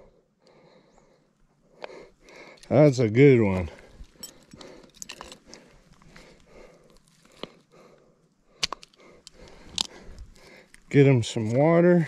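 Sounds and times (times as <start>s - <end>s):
handling clicks and rustles: 2.3s - 7.7s.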